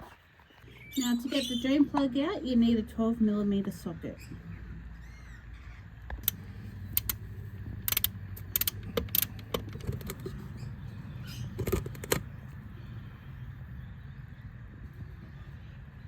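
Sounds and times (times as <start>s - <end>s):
low steady hum: 0.4s - 16.0s
socket wrench clicks and clinks: 7.8s - 10.3s.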